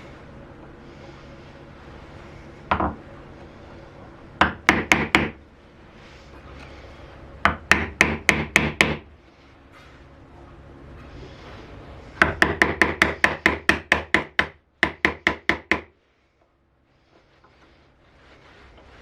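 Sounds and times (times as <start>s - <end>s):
mallet striking wood: 4.4s - 5.4s, 7.5s - 9.0s.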